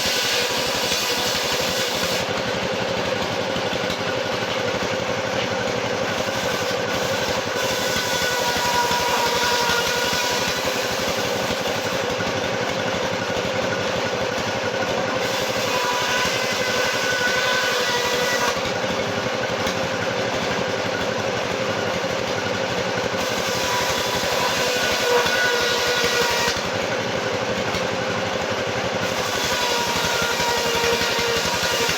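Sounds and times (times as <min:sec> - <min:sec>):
sawmill machinery running: 0:00.0 - 0:31.9.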